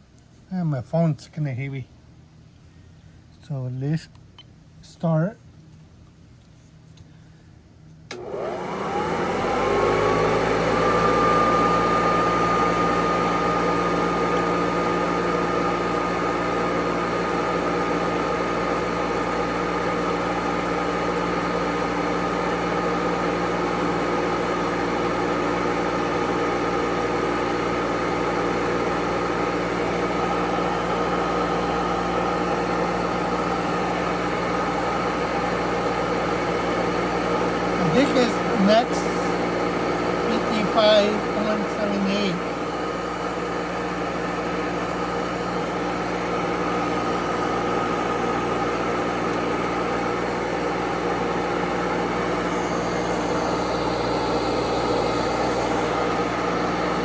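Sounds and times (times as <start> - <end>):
vacuum cleaner switch click: 8.1 - 9.8, 14.2 - 14.6
vacuum cleaner motor whining: 8.1 - 57.0.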